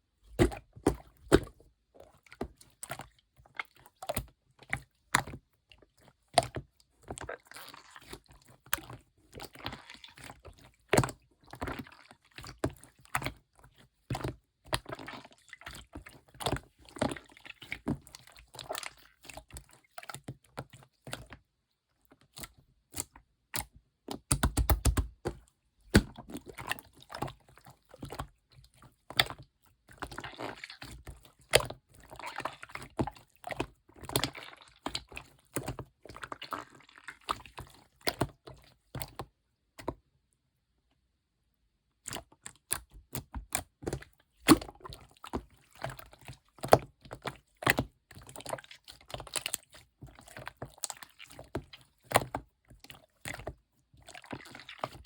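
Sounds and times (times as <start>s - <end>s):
slime squished by hand: 29.1s - 38.4s.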